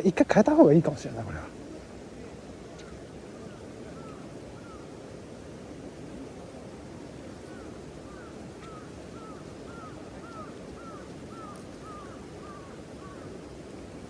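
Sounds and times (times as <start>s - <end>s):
water noise: 0.0s - 14.0s.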